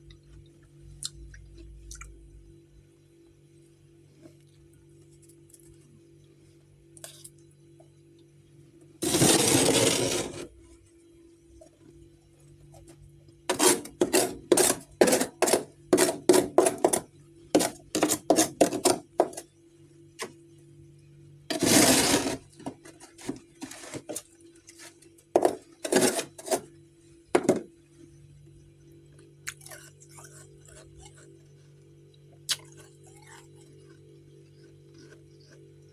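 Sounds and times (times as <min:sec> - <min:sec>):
faint low hum: 0:00.0 - 0:35.9
noisy scrape: 0:09.0 - 0:10.6, 0:13.5 - 0:17.0, 0:21.5 - 0:26.7.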